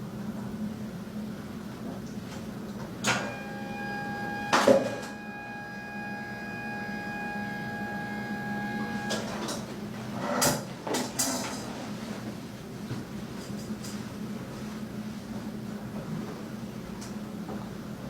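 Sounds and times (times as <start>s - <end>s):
small electric motor whining: 3.3s - 9.3s.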